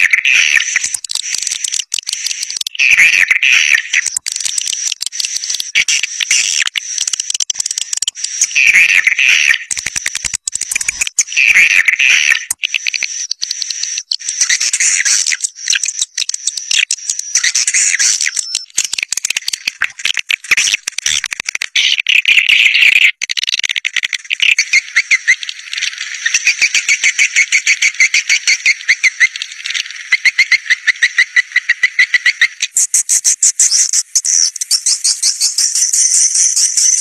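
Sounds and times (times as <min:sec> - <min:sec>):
rapid high bird chirping: 0:12.2 - 0:18.9, 0:30.1 - 0:37.0.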